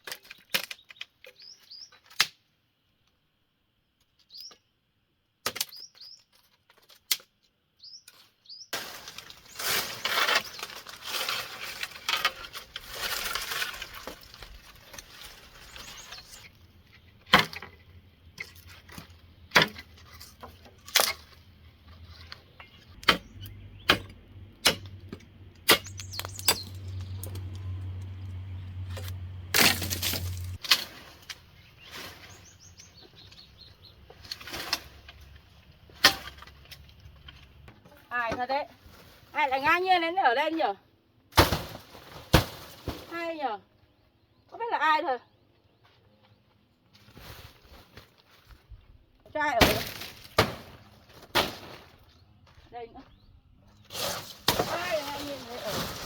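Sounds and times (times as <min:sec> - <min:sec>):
bird chirps: 0:00.8 - 0:02.0, 0:05.7 - 0:06.3, 0:15.6 - 0:17.0, 0:22.3 - 0:24.1, 0:25.7 - 0:28.9, 0:31.5 - 0:34.0
dense rustling: 0:08.8 - 0:16.9, 0:25.8 - 0:35.1, 0:53.9 - 0:56.0.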